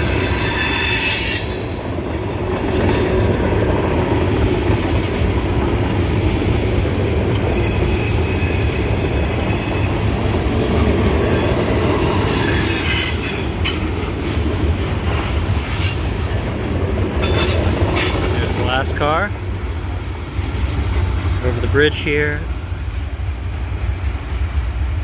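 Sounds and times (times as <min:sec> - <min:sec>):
high wheel squeals: 0:00.0 - 0:01.7, 0:07.3 - 0:10.2, 0:11.2 - 0:16.4
freight train rumbling past: 0:00.0 - 0:25.0.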